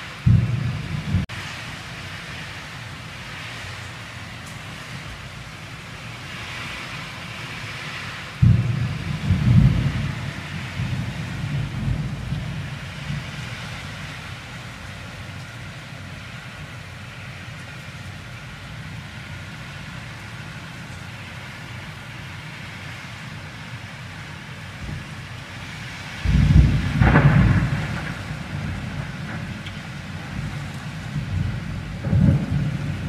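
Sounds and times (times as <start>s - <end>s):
heavy rain hissing: 0.0s - 33.0s
thunder crack rumbling: 0.2s - 1.4s, 8.4s - 14.4s, 26.2s - 33.0s.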